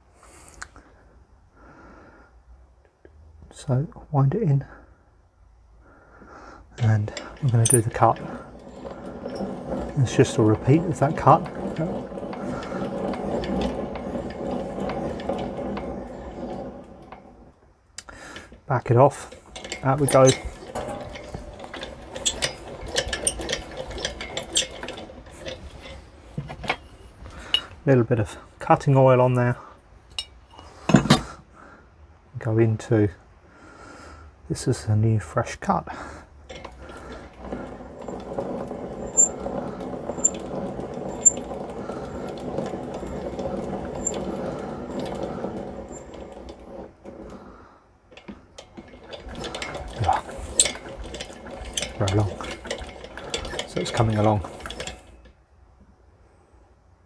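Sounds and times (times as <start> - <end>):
lathe gears clicking and rattling: 6.6 - 31.3, 36.5 - 55.4.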